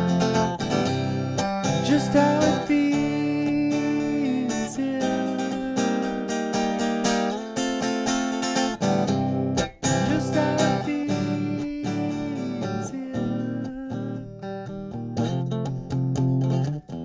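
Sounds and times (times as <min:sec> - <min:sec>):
guitar playing: 0:00.0 - 0:17.0.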